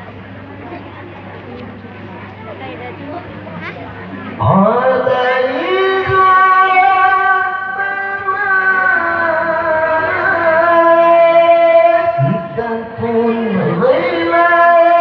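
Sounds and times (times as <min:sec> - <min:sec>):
person chanting melodic recitation: 0:04.4 - 0:15.0.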